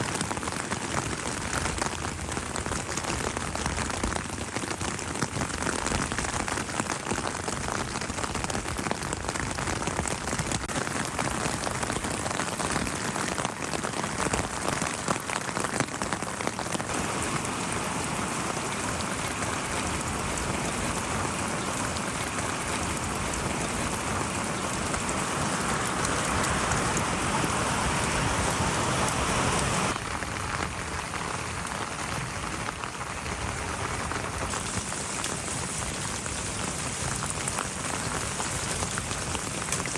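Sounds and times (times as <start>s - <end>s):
rain pattering: 0.0s - 39.9s.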